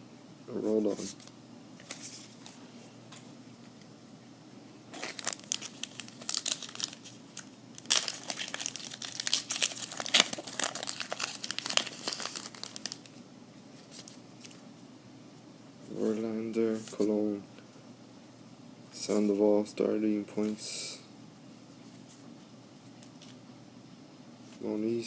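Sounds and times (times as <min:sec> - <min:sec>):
wrapper tearing and crinkling: 0:04.9 - 0:13.2.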